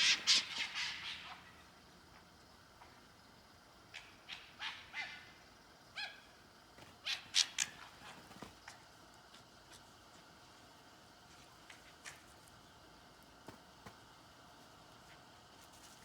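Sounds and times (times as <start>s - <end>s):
foxes calling with high cries: 0.0s - 1.6s, 4.3s - 5.4s, 6.0s - 6.2s.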